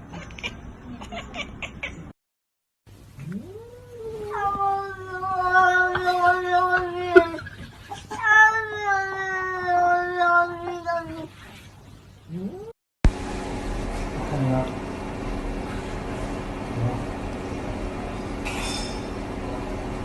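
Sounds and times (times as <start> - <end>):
cat yowling: 3.3 - 11.3.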